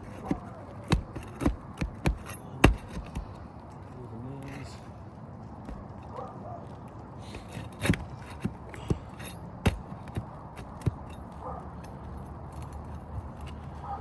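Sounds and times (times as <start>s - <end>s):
hand tool knocking on roof shingles: 0.0s - 3.4s, 7.2s - 11.2s.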